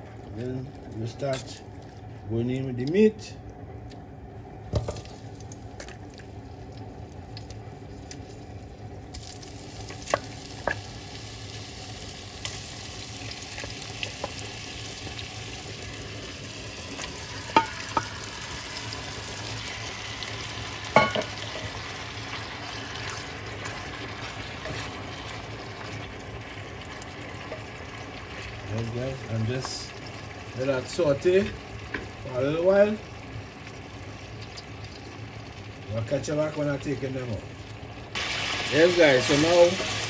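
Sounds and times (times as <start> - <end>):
beef sizzling in hot oil: 8.3 - 40.0
utensil clacking on pot: 17.5 - 18.2, 20.9 - 21.7.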